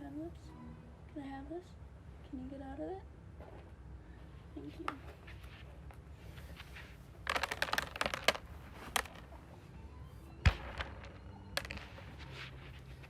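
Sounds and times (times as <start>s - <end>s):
small clicks and rattles: 7.2s - 9.4s.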